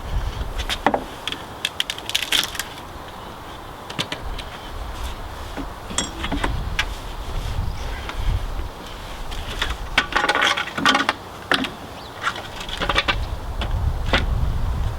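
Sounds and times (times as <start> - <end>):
metallic clinks: 5.9 - 6.5.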